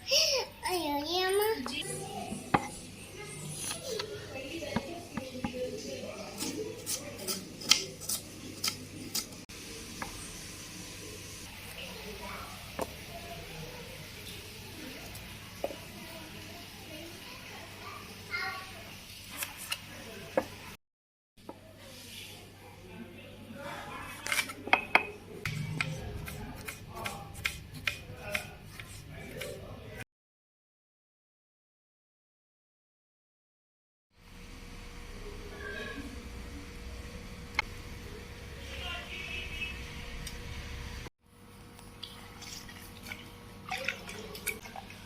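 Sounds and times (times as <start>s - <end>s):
metal utensils clinking and scraping: 6.3s - 9.4s, 24.1s - 27.2s.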